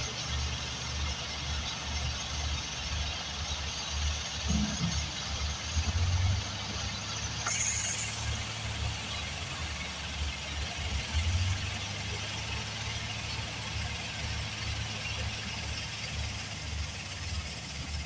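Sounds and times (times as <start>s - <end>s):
heavy machine engine rumbling: 0.0s - 18.0s
hiss: 7.4s - 9.5s.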